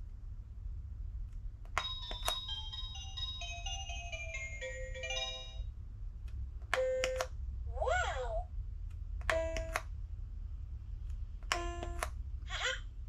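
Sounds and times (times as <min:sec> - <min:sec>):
toy button clicks: 0:01.7 - 0:02.7, 0:06.7 - 0:07.4, 0:09.2 - 0:09.9, 0:11.4 - 0:12.2
toy electronic beeping jingle: 0:01.8 - 0:05.7.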